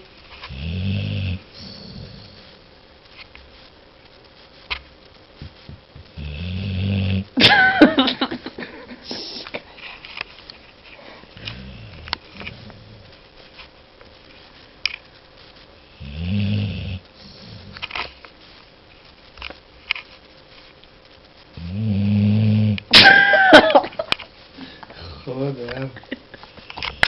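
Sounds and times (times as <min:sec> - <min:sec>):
dog snoring: 0:00.5 - 0:02.5, 0:06.1 - 0:07.4, 0:11.4 - 0:13.1, 0:15.9 - 0:17.8, 0:21.6 - 0:22.9.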